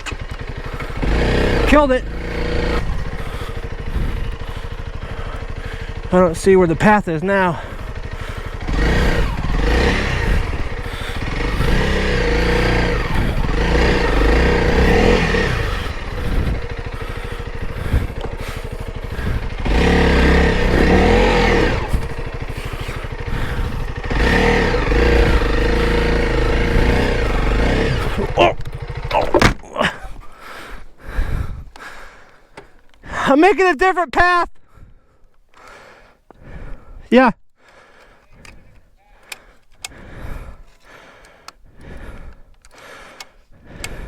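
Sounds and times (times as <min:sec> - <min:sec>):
motorcycle engine revving: 0:00.0 - 0:31.2, 0:43.6 - 0:44.0.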